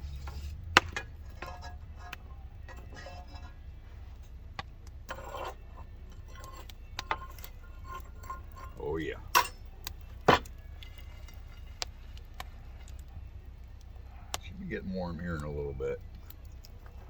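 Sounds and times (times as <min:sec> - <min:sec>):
cooking tools clinking on frying pan: 0:05.4 - 0:11.6.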